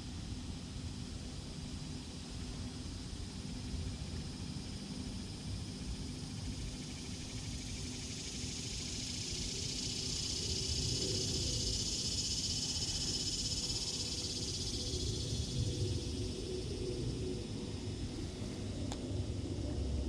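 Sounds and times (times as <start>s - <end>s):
insects buzzing: 3.2s - 20.0s
low outdoor rumble: 13.9s - 20.0s.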